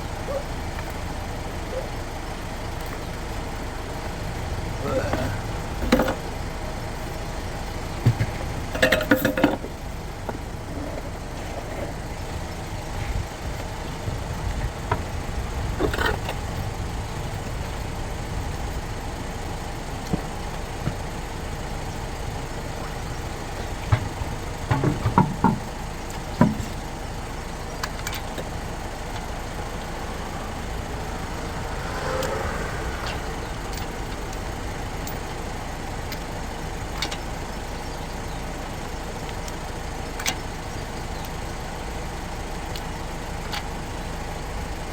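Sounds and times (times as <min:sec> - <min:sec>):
car engine idling: 0:00.0 - 0:44.9
metallic knocks and clatters: 0:08.0 - 0:09.7, 0:23.8 - 0:25.8.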